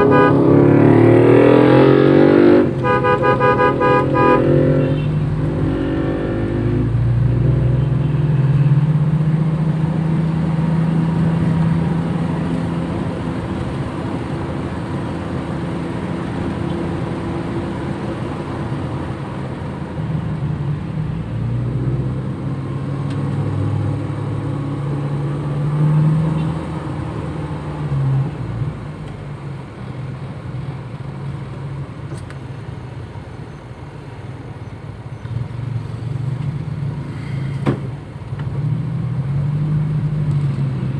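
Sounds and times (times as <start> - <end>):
car engine revving while driving: 0.0 - 29.5, 38.2 - 40.9.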